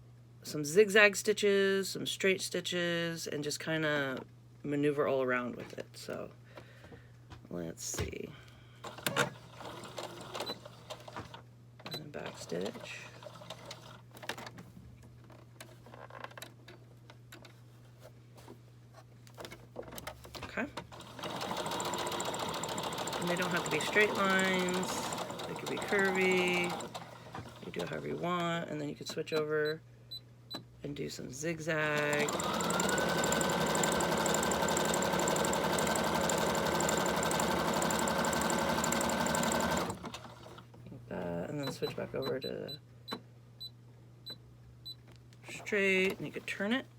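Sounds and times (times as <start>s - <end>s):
sewing machine clicking: 8.8s - 11.4s, 19.9s - 28.2s, 32.0s - 40.6s.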